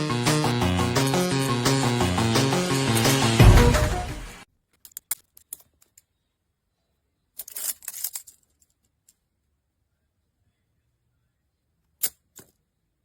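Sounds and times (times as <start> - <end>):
background music: 0.0 - 4.4
low boom: 3.4 - 4.3.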